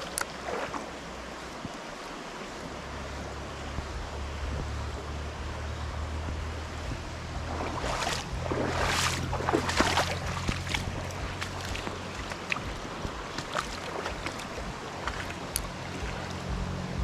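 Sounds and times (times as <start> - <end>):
rustling splashes: 0.0 - 2.7, 6.9 - 17.0
low steady hum: 0.0 - 17.0
moving water: 0.0 - 17.0
wind: 0.0 - 17.0.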